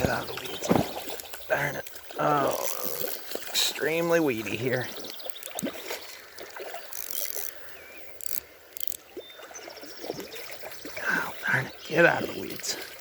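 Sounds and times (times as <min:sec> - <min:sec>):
stream water running: 0:00.0 - 0:13.0
fishing reel winding: 0:06.8 - 0:09.0.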